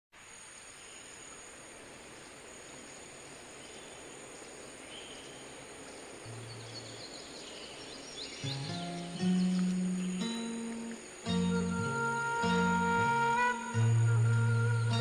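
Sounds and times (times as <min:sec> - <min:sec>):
faint bird chirps: 0:02.6 - 0:15.0
high-pitched insect drone: 0:09.4 - 0:15.0.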